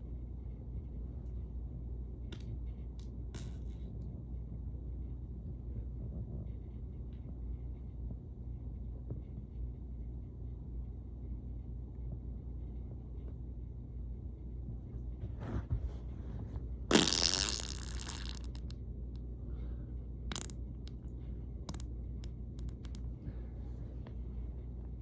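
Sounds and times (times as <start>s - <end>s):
steady low hum: 0.0s - 25.0s
loud fart: 16.9s - 18.7s, 20.3s - 20.5s.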